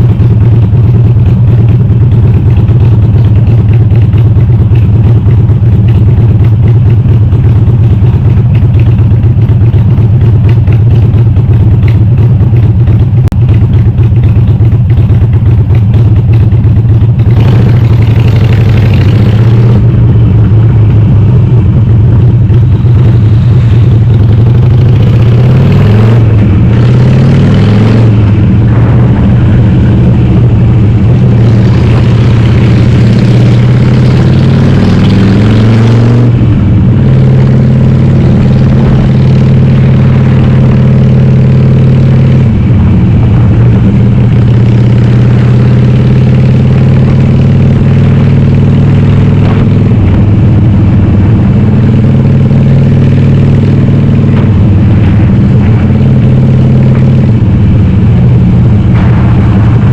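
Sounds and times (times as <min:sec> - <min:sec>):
loud motorcycle engine revving: 0:15.3 - 0:59.9.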